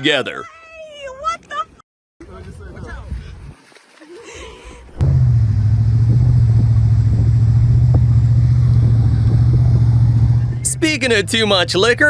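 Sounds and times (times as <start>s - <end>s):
boat engine humming: 5.0s - 12.0s.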